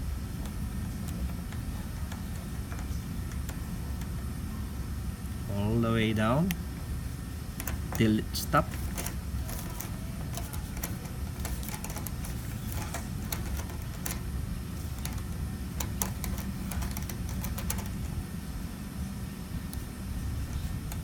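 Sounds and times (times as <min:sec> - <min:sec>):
steady low hum: 0:00.0 - 0:21.0
allen key clicking on screws: 0:00.4 - 0:04.2, 0:07.5 - 0:18.2.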